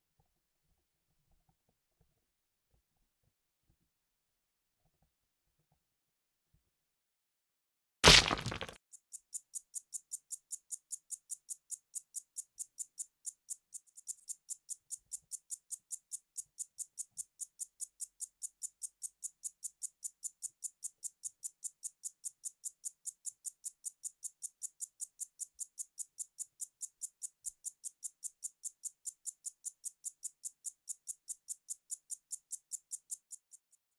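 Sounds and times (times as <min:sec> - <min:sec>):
sharp knock: 0:08.0 - 0:08.8.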